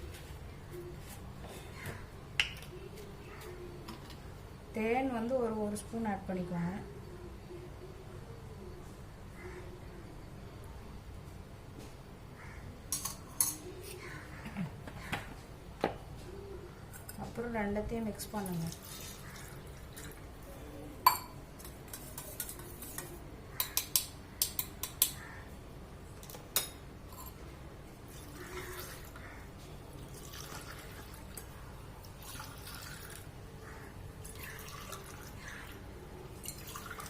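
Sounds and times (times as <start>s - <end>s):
spoon clinking against glass: 21.1s - 22.8s.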